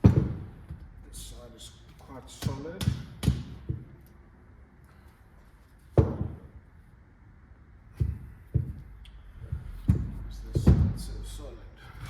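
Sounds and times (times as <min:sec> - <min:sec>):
dull knocks on bike fork: 0:06.0 - 0:06.5.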